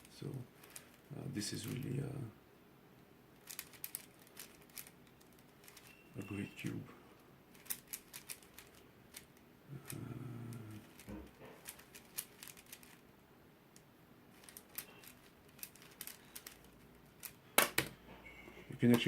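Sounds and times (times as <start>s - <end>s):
puzzle cube plastic clicking: 3.4s - 5.9s, 7.5s - 13.0s, 13.7s - 18.0s.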